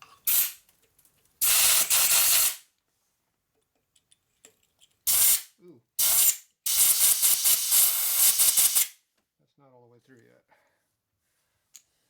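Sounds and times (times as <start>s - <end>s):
compressed air blow gun hissing: 0.3s - 0.6s, 1.4s - 2.6s, 6.0s - 9.0s.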